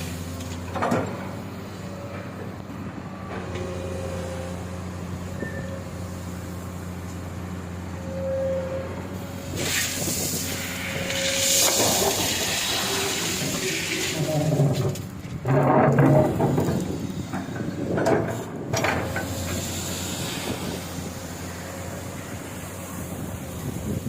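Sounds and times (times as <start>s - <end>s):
excavator diesel engine humming: 0.0s - 24.0s
faint squeal: 5.3s - 5.9s, 8.0s - 9.0s, 10.8s - 12.1s.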